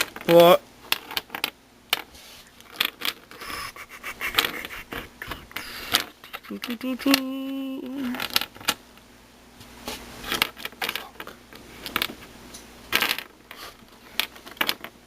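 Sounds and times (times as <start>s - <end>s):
plastic puzzle pieces clicking: 5.9s - 7.3s, 14.2s - 14.9s.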